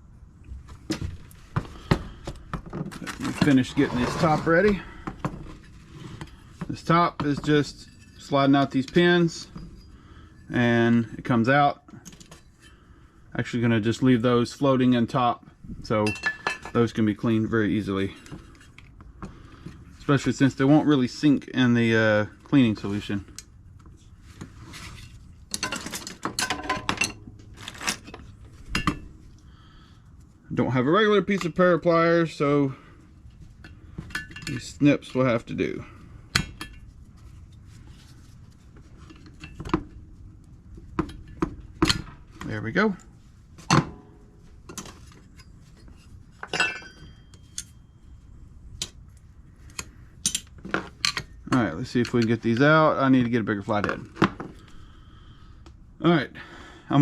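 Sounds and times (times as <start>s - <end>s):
metal parts and tools clinking: 24.9s - 29.1s, 33.6s - 35.2s, 43.7s - 48.0s, 49.7s - 52.7s.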